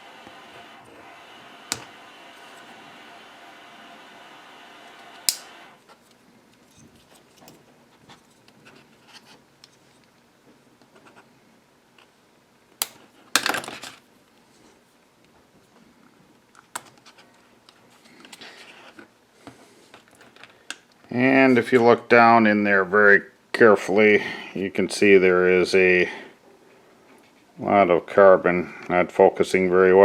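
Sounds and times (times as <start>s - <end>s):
steady pitched hum: 0.0s - 5.8s
sharp plastic snaps: 5.2s - 5.6s, 12.8s - 13.0s.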